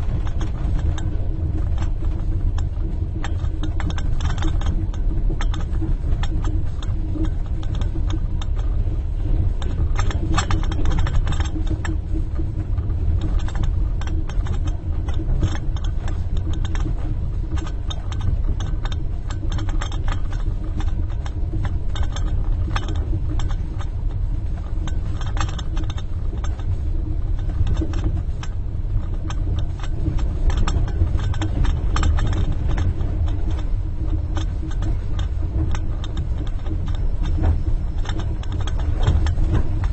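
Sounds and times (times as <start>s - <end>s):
train rumbling: 0.0s - 39.9s
spoon rattling against a cup: 13.2s - 23.8s.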